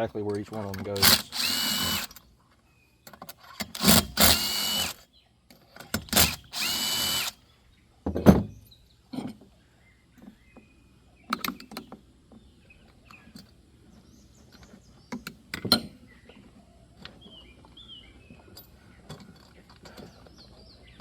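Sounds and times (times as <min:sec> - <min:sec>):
tools clicking and knocking: 0:00.6 - 0:02.2, 0:03.1 - 0:05.0, 0:05.8 - 0:07.3.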